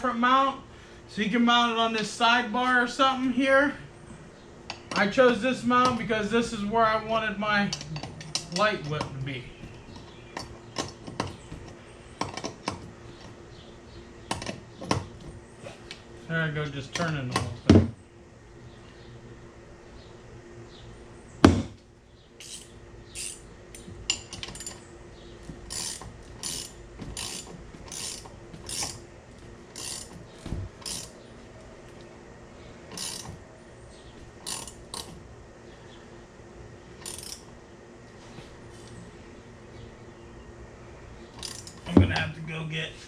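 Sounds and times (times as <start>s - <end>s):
wrench ratcheting clicks: 22.4s - 23.4s, 25.7s - 29.0s, 29.7s - 30.2s, 30.8s - 31.2s, 32.9s - 33.4s, 34.4s - 35.1s, 37.0s - 37.5s, 41.4s - 41.8s.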